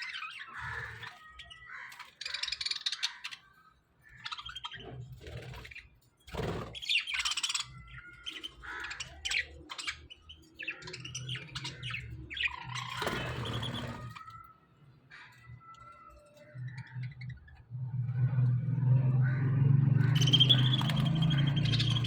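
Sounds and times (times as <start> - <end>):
budgerigars chirping: 0.0 - 3.5, 4.1 - 14.4, 19.2 - 22.0
low rumble: 17.5 - 22.0.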